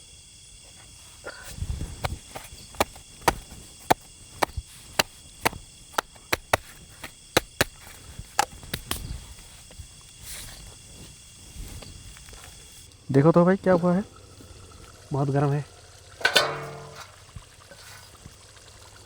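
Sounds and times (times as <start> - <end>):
sharp wooden knocks: 1.9 - 9.0.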